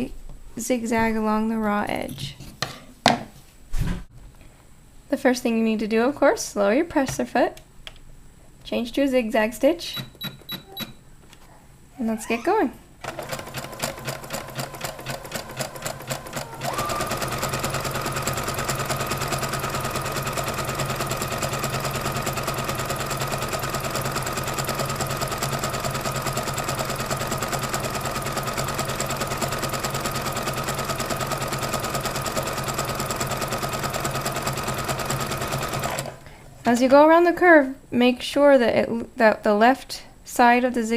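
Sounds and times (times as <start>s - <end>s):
sewing machine stitching: 13.0s - 36.2s.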